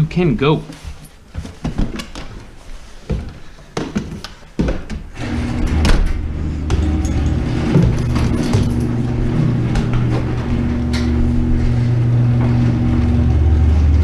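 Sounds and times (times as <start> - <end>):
door opening: 4.6 - 13.6
low mechanical hum: 5.2 - 14.0
knocks and clicks: 5.7 - 11.2.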